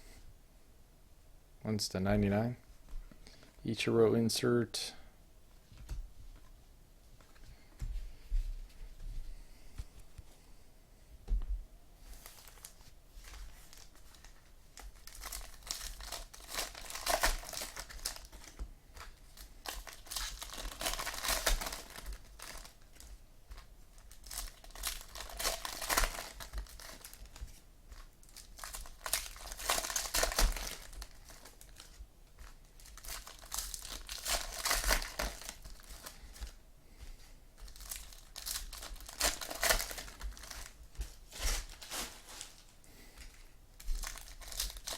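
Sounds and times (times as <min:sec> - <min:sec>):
foil wrappers tearing and crinkling: 0:12.2 - 0:18.6, 0:19.4 - 0:23.0, 0:23.9 - 0:36.2, 0:37.7 - 0:42.7, 0:43.8 - 0:44.9.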